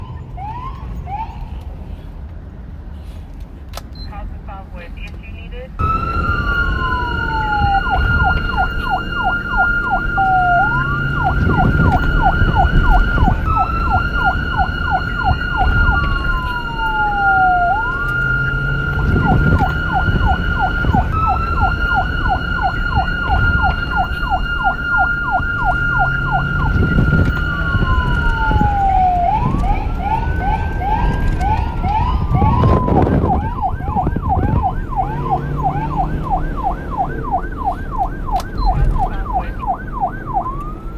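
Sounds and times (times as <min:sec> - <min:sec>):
police car siren: 0:00.0 - 0:01.9, 0:05.8 - 0:40.9
low rumble: 0:05.8 - 0:40.1.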